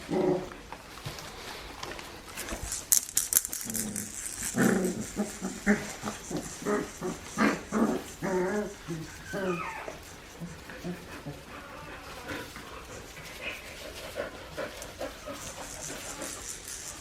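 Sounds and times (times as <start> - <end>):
puppies yipping and whining: 4.2 - 17.0.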